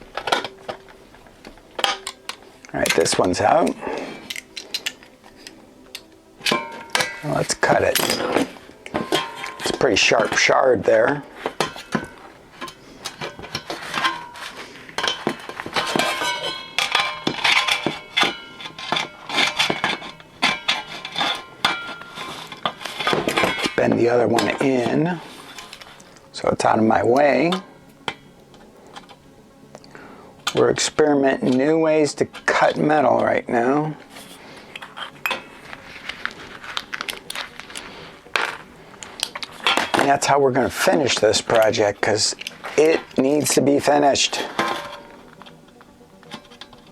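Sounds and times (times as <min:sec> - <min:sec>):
metallic clicks and clinks: 0:00.1 - 0:10.5.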